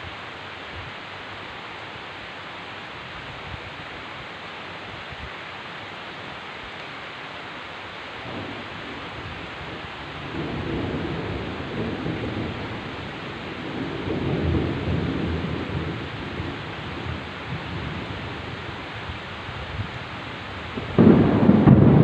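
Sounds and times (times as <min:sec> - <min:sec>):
heavy rain: 0:00.0 - 0:22.0
rolling thunder: 0:08.2 - 0:18.7, 0:20.7 - 0:22.0.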